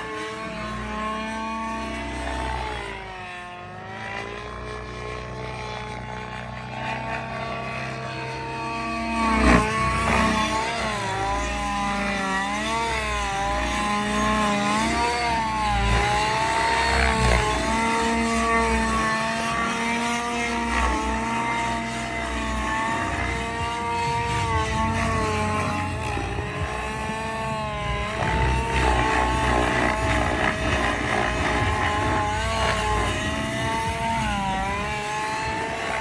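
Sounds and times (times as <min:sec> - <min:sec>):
model helicopter engine: 0:00.0 - 0:36.0.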